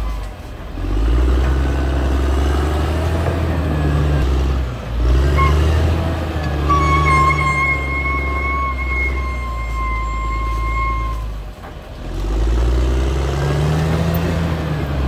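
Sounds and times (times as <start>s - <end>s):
bulldozer diesel engine running: 0.0s - 15.0s
short beep: 5.4s - 11.3s.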